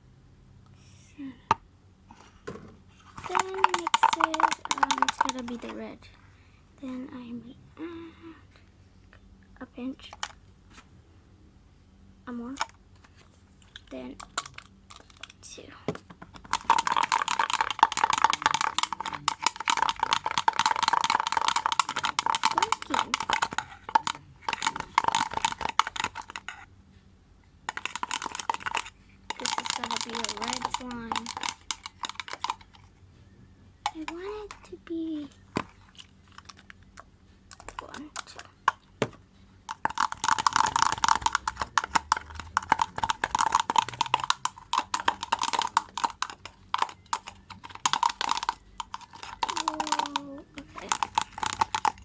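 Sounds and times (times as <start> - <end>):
slime stirred sticky clicking: 3.2 - 5.9, 16.3 - 26.7, 27.7 - 32.8, 33.9 - 34.8, 35.6 - 52.0.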